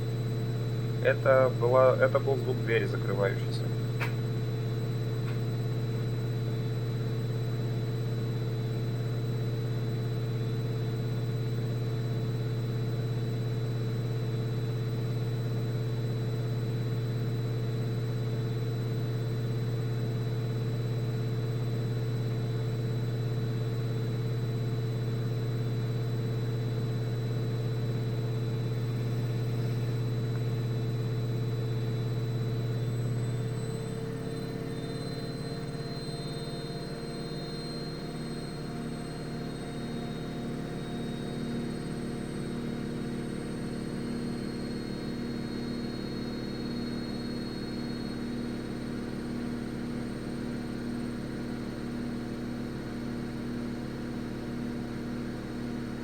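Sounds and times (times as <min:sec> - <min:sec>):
washing machine spinning: 0:18.8 - 0:47.2.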